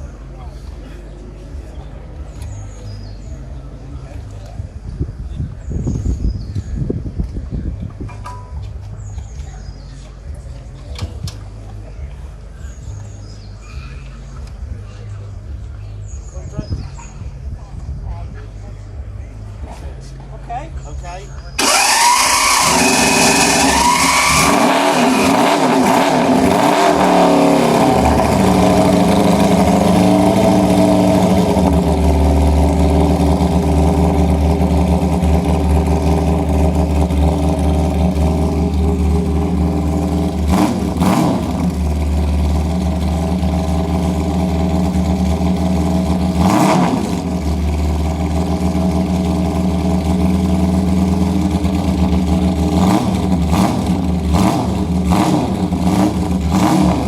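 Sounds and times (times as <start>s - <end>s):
motorcycle engine running: 21.6s - 57.0s.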